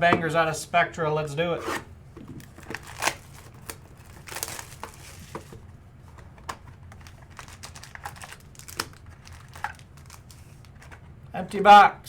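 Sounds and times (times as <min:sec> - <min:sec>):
cardboard rustling: 0:01.6 - 0:11.1
wrapper crinkling: 0:02.2 - 0:05.6, 0:06.4 - 0:11.0.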